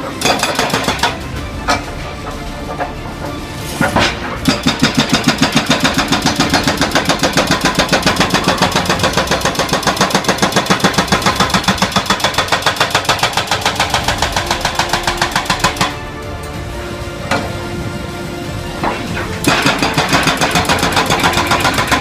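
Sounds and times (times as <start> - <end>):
hydraulic hammer pounding: 0.0 - 17.8, 18.7 - 22.0.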